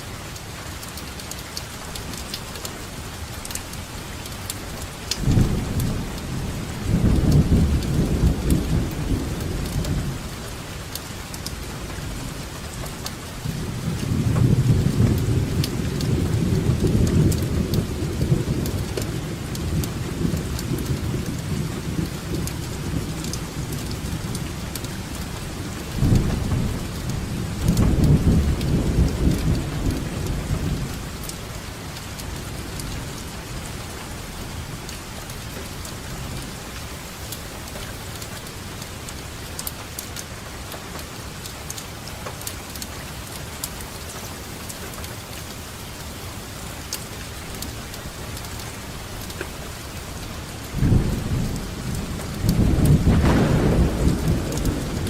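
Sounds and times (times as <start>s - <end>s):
rain hissing: 0.0s - 55.0s
water drips ticking: 0.2s - 6.4s, 10.8s - 13.4s, 14.0s - 55.0s
rolling thunder: 5.2s - 10.3s, 25.9s - 31.2s, 50.7s - 55.0s.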